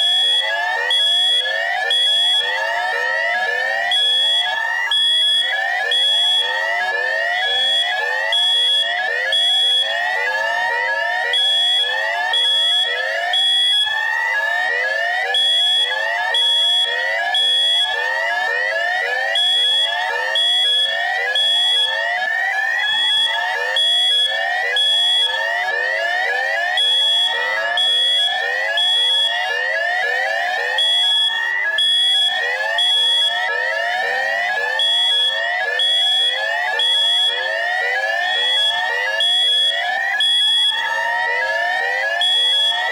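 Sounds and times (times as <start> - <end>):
electronic alarm whoops: 30.3 - 42.9.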